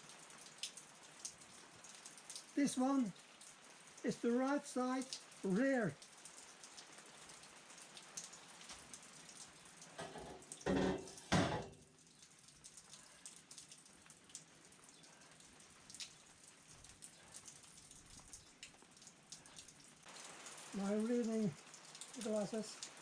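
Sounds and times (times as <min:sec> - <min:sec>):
metal pipes knocking: 0:10.0 - 0:11.8.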